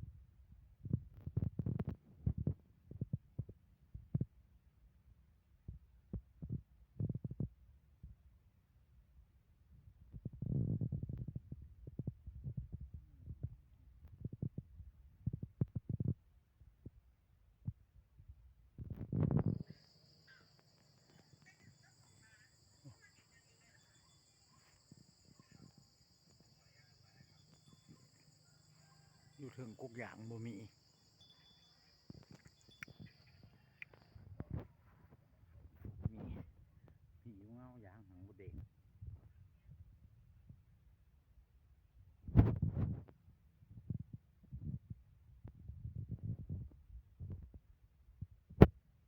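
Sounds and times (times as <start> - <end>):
low rumble of microphone handling: 0.8 - 4.4, 10.0 - 17.0, 17.6 - 19.9, 34.0 - 37.0, 42.2 - 48.8
high insect drone: 19.4 - 34.1
faint short chirps: 19.4 - 34.3.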